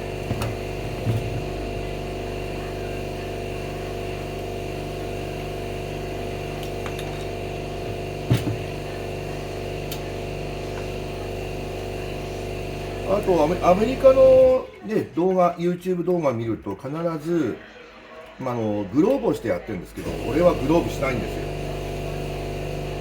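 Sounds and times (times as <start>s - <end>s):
parts-washing machine humming: 0.0s - 15.3s, 19.0s - 23.0s.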